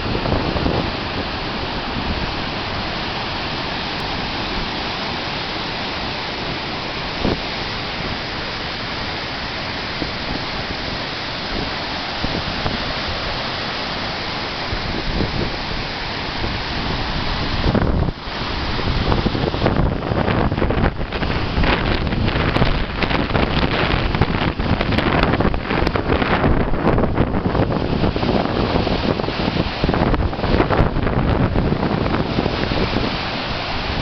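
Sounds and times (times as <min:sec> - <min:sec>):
wind bumps on microphone: 0:00.0 - 0:02.6, 0:07.1 - 0:08.2, 0:14.6 - 0:34.0
waterfall rushing: 0:00.0 - 0:34.0.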